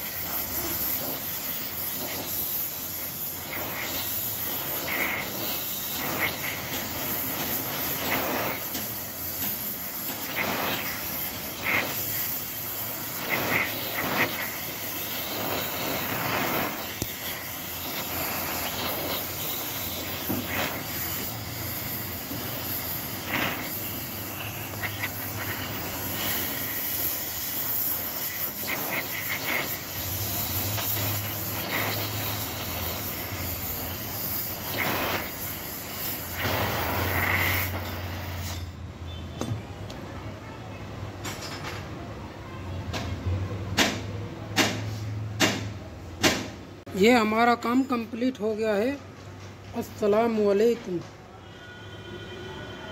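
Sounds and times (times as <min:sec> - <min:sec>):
welding arc hissing: 0:00.0 - 0:39.2.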